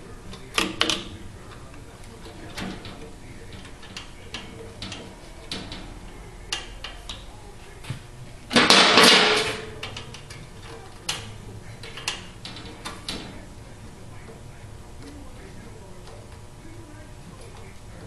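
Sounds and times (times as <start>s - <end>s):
loud metal clatter: 8.5s - 10.2s.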